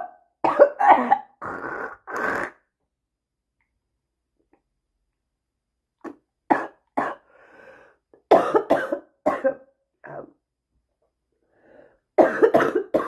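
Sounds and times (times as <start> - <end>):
person coughing: 0.0 - 1.4, 8.3 - 10.3, 12.2 - 13.0.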